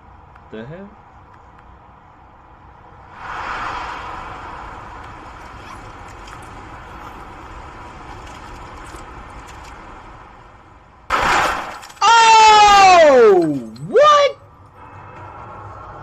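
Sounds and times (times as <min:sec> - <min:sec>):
moving train running noise: 0:00.0 - 0:11.1, 0:13.2 - 0:16.0.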